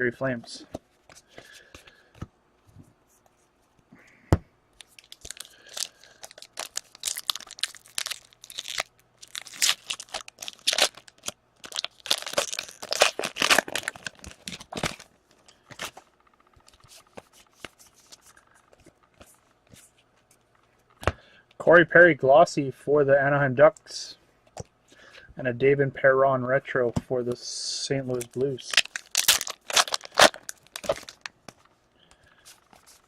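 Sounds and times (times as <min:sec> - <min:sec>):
foil wrapper tearing and crinkling: 0:04.8 - 0:15.1, 0:28.2 - 0:31.3.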